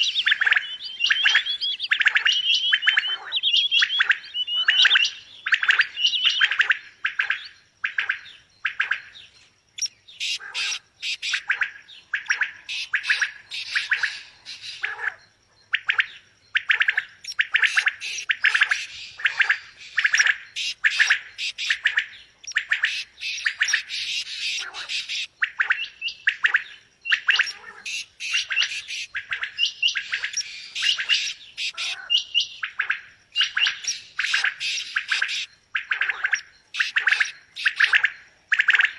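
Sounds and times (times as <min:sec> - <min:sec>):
quail calling: 0:09.8 - 0:15.2, 0:15.9 - 0:26.0, 0:27.1 - 0:32.7, 0:33.4 - 0:38.9.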